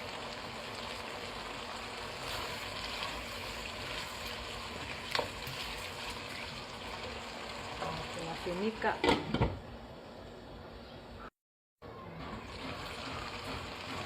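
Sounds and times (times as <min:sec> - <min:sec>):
food sizzling in a pot: 0:00.0 - 0:09.0, 0:12.2 - 0:14.0.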